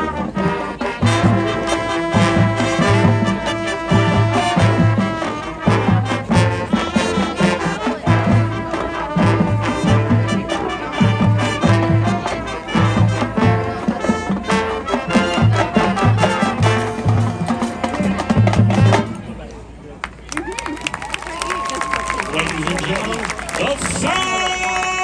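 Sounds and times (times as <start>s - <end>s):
marching band playing: 0.0s - 19.2s, 20.0s - 25.0s
trombones and trumpets: 0.0s - 19.4s, 20.6s - 25.0s
bass and drum beat: 20.1s - 25.0s.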